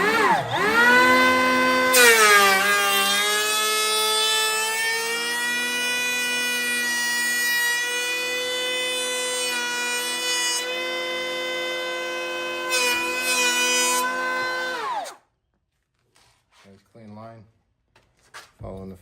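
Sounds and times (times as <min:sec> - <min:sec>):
motor spinning down: 0:00.0 - 0:02.9, 0:10.8 - 0:15.2
electric hand planer whining: 0:00.0 - 0:15.2
planer cutting wood: 0:00.0 - 0:15.2.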